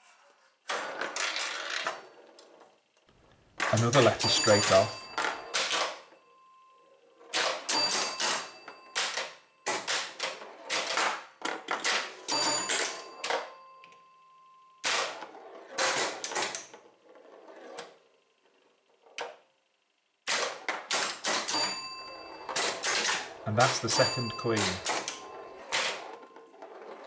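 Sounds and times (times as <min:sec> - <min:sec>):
pinball machine clacking: 0:03.6 - 0:14.0, 0:20.4 - 0:27.0
pinball ringing tones: 0:03.6 - 0:18.7, 0:20.5 - 0:27.0.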